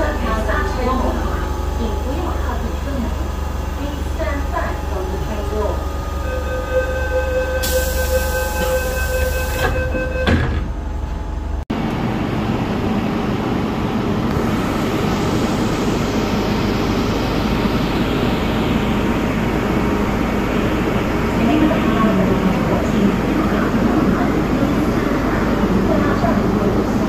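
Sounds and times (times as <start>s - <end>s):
train running rumble: 0.0s - 27.0s
train door whine and air hiss: 7.4s - 10.7s.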